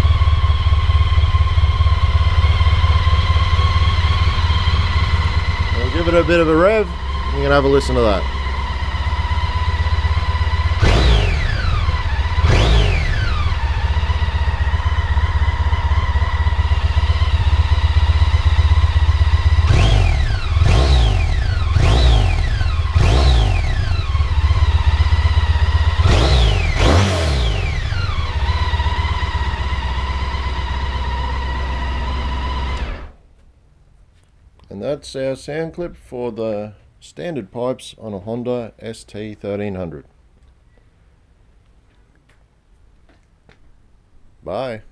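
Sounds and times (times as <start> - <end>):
motorcycle engine idling and revving: 0.0 - 33.2.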